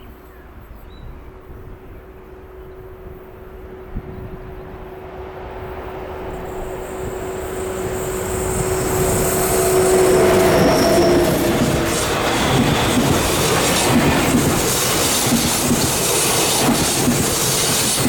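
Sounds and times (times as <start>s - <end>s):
train approaching humming: 0.0s - 18.0s
wheel squeal: 6.8s - 13.6s.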